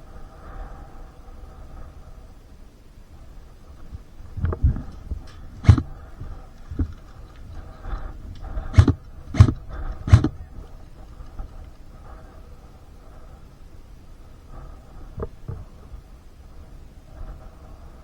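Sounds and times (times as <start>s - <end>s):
sharp knocks with low thump: 5.6s - 5.9s, 8.7s - 10.4s.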